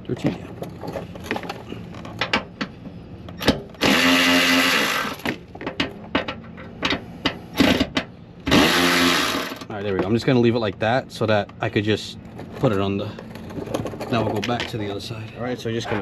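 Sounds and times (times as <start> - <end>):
cordless power tool spinning: 3.8 - 5.3, 8.5 - 9.7.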